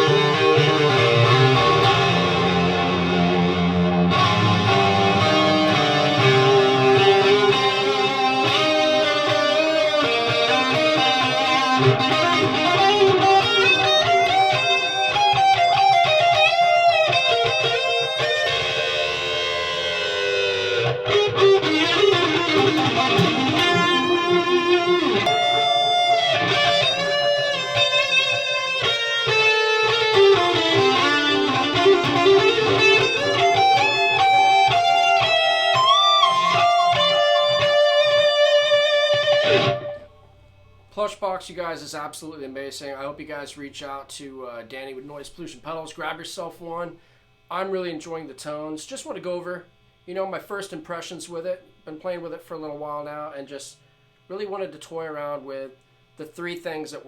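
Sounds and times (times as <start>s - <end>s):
distorted electric guitar lead: 0.0s - 41.0s.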